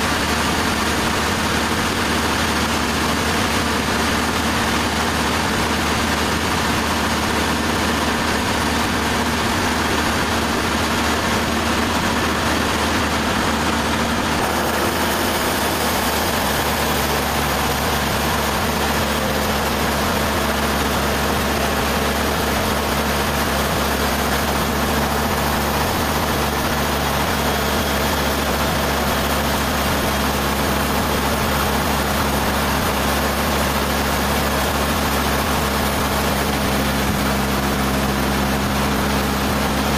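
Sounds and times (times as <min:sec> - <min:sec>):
sawmill machinery humming: 0:00.0 - 0:39.9.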